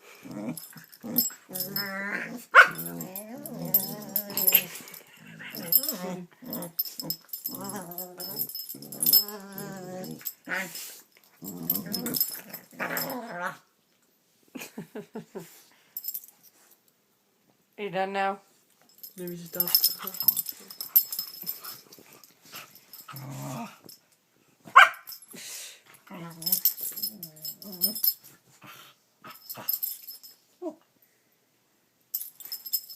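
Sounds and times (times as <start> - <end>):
dog growling and whining: 0.0 - 13.6, 23.0 - 24.0, 26.0 - 28.2
dog yipping: 2.6 - 2.8.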